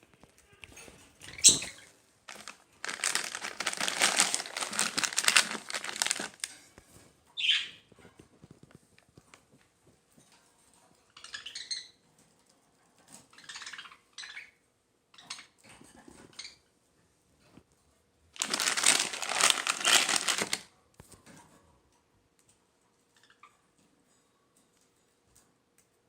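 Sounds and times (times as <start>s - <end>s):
plastic packaging crinkling: 2.3s - 6.6s, 18.4s - 20.7s.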